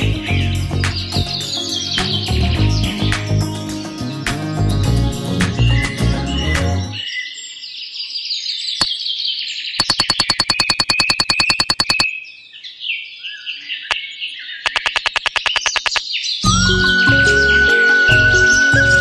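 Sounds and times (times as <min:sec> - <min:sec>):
small birds chirping: 0:00.0 - 0:05.0, 0:05.6 - 0:16.5
rapid run of sharp clicks: 0:09.8 - 0:12.0, 0:14.7 - 0:16.0.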